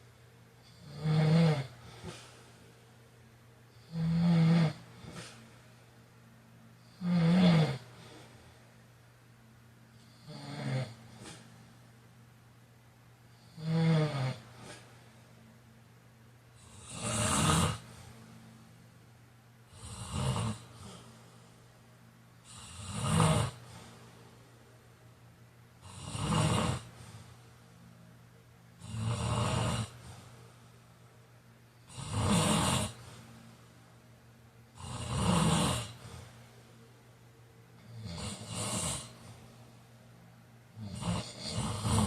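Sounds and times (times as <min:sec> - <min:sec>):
person snoring: 0:00.6 - 0:02.4, 0:03.7 - 0:05.4, 0:06.8 - 0:08.3, 0:10.0 - 0:11.5, 0:13.3 - 0:14.9, 0:16.6 - 0:18.1, 0:19.7 - 0:21.3, 0:22.4 - 0:24.1, 0:25.8 - 0:27.1, 0:28.8 - 0:30.3, 0:31.8 - 0:33.2, 0:34.8 - 0:36.3, 0:37.8 - 0:39.4, 0:40.8 - 0:42.0.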